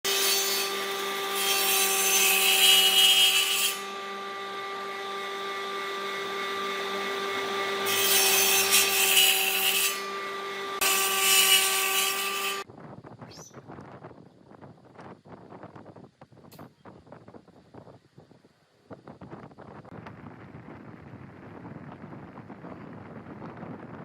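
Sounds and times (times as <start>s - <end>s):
power tool cutting wood: 0.1s - 12.7s.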